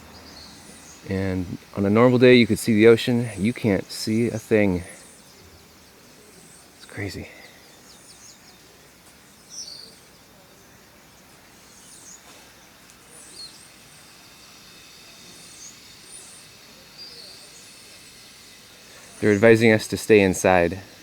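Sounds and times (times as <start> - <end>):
faint steady hiss: 0.0 - 21.0
high bird chirps: 9.3 - 10.2, 13.0 - 19.7.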